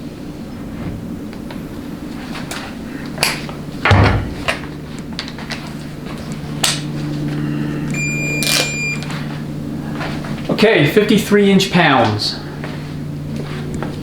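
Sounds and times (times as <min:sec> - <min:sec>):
steady low hum: 0:00.0 - 0:14.0
heavy thud: 0:03.8 - 0:04.5
short electronic beep: 0:07.6 - 0:09.2.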